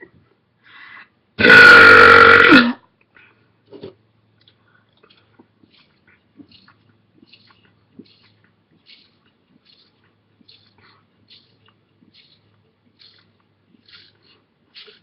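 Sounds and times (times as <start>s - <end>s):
person belching: 1.4s - 2.8s.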